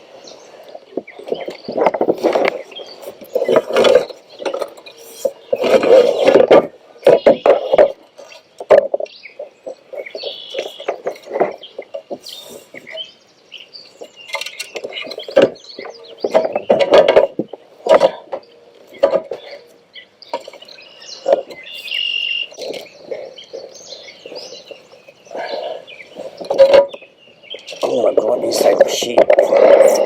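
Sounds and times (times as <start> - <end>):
rustling: 0.5 - 13.1, 13.8 - 30.0
knocks and thumps in kayak: 14.0 - 18.4.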